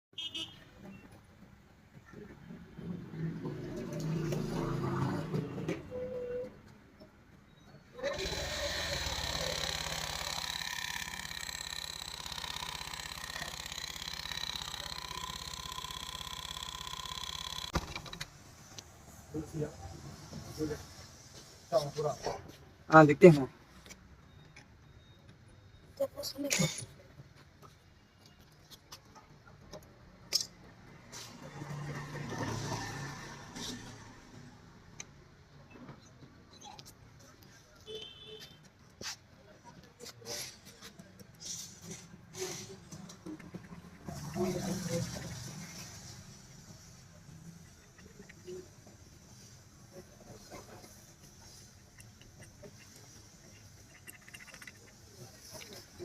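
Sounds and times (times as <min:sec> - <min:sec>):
scooter engine idling: 0:08.0 - 0:17.8, 0:41.7 - 0:56.0
small engine ticks: 0:08.0 - 0:17.8
thin whine: 0:08.0 - 0:17.8.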